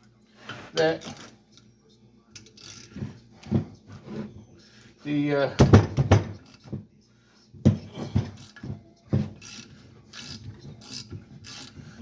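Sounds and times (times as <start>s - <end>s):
ratchet pawl clicking: 9.4s - 11.8s.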